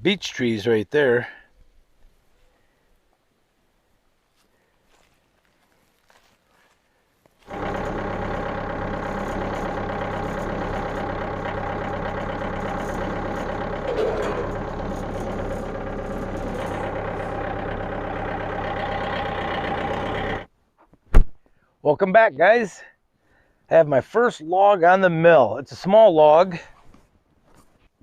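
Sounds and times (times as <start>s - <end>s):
tractor engine running: 7.4s - 20.5s.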